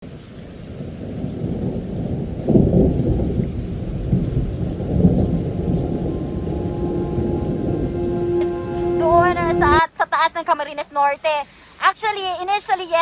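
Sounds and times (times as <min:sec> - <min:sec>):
wind buffeting microphone: 0:01.3 - 0:08.1.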